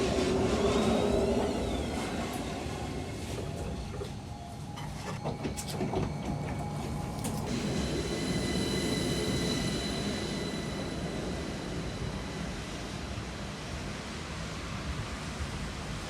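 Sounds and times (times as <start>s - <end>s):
high wheel squeal: 6.0s - 13.6s.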